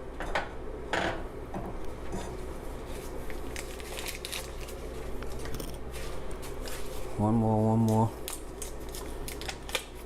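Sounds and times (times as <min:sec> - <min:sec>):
paper crinkles and clicks: 0:03.3 - 0:05.8, 0:07.8 - 0:10.0.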